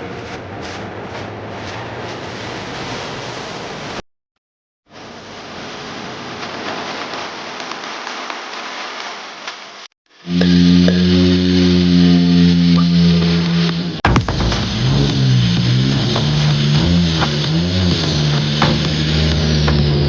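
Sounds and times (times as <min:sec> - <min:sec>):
milling machine cutting metal: 0:10.3 - 0:20.0.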